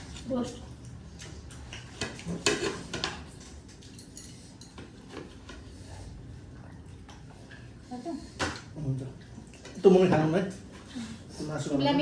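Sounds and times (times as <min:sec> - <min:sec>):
cutlery clinking on plates: 0:01.9 - 0:05.4.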